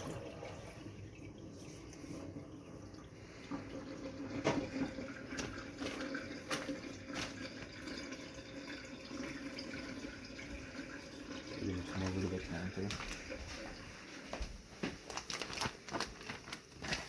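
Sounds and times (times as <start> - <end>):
water sloshing in sink: 0.0 - 17.0
knocks and splashes: 4.3 - 7.7.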